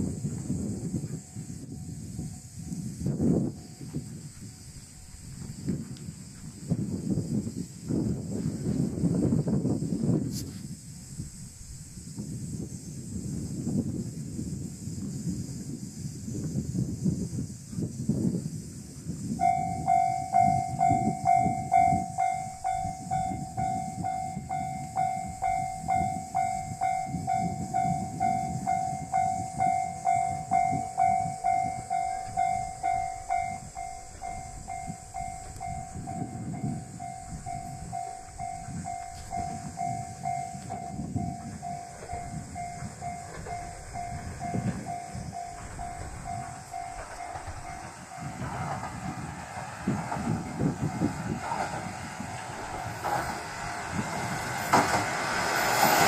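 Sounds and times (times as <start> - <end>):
level crossing bell dinging: 19.4 - 48.5.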